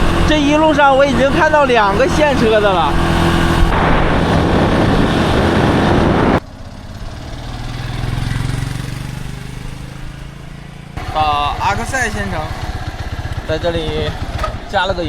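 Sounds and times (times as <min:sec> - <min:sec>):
motorcycle engine hum: 0:00.0 - 0:15.0
wind rush: 0:02.0 - 0:06.5.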